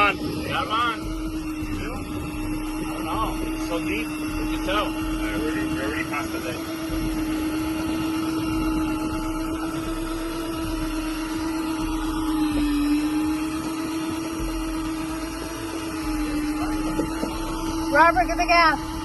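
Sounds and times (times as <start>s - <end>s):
electric fishing reel motor whining: 0.0s - 19.0s.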